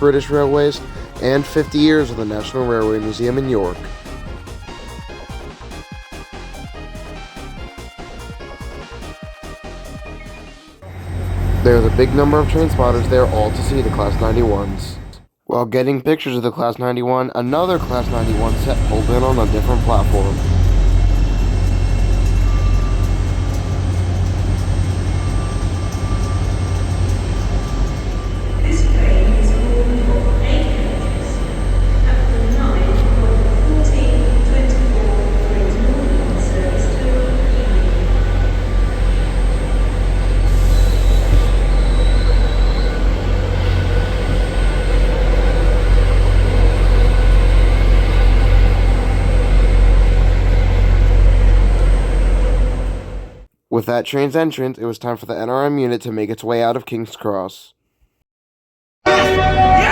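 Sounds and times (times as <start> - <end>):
train rumbling into station: 0.0 - 5.1, 10.8 - 15.3, 17.5 - 53.5, 59.1 - 59.9
faint high whine: 10.8 - 15.2, 17.6 - 53.5
faint even hum: 17.7 - 53.4.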